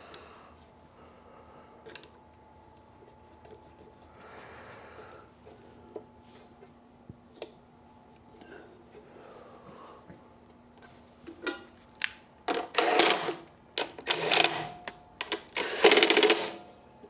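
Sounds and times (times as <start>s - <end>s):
small clicks of screws: 12.0s - 16.6s
cordless drill driving screws: 12.5s - 16.6s.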